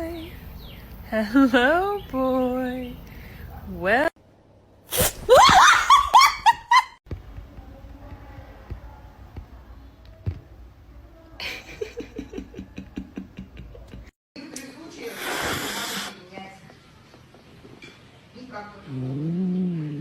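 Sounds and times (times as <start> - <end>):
person laughing hard: 5.2 - 7.0.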